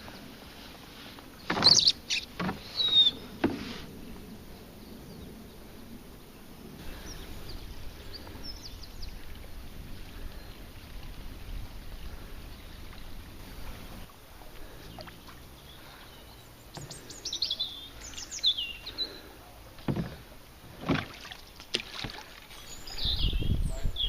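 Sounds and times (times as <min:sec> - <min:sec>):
sharp knocks or splashes: 0:01.4 - 0:02.7, 0:19.8 - 0:22.5
small bird chirping: 0:01.4 - 0:03.2, 0:15.5 - 0:19.1
low rumbling noise: 0:01.9 - 0:21.0.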